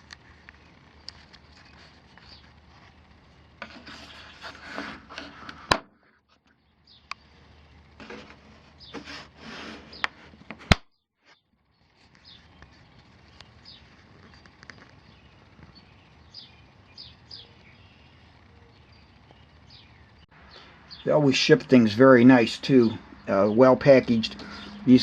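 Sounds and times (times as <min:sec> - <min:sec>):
handling rustling and scraping: 0:00.0 - 0:06.5, 0:07.9 - 0:15.8
faint birds chirping: 0:00.0 - 0:25.0.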